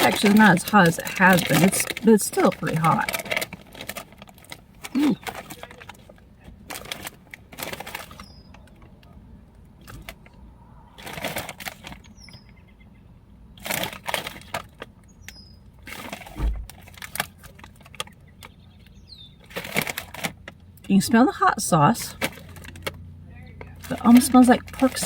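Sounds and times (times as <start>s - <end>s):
chip bag rustling: 0.0s - 8.3s, 11.0s - 12.1s, 13.6s - 14.9s, 19.4s - 20.5s, 23.8s - 25.0s
bird chirping: 8.1s - 9.0s, 12.0s - 13.1s, 15.1s - 15.7s, 18.1s - 19.5s.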